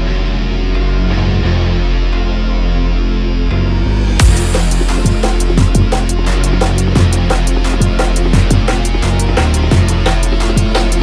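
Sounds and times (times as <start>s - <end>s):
electronic music with heavy beat: 4.2s - 11.0s.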